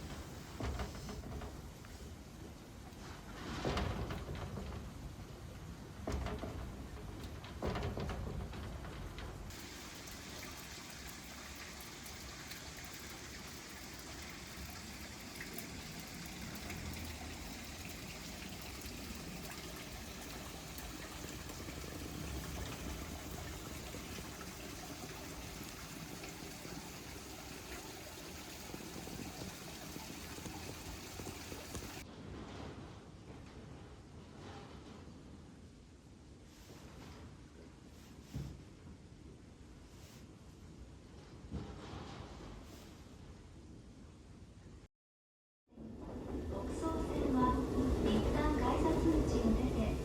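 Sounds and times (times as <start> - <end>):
steady rain falling: 7.2 - 32.0.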